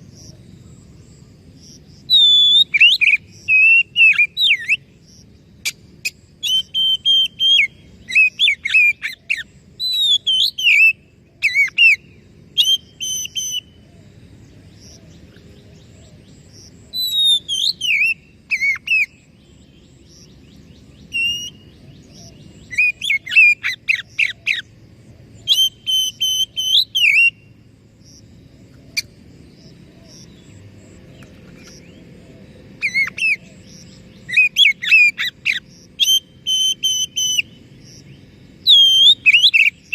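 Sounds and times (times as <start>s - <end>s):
faint low hum: 0.0s - 39.9s
songbird whistling: 2.1s - 4.9s, 5.6s - 13.8s, 16.9s - 20.3s, 20.9s - 24.7s, 25.4s - 27.6s, 32.8s - 38.0s, 38.6s - 39.9s.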